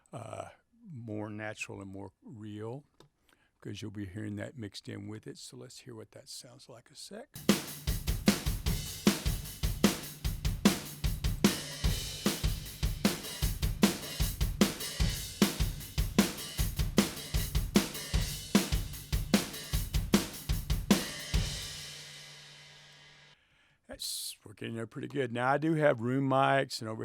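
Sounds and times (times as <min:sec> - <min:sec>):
drum kit playing a groove: 0:07.4 - 0:23.2.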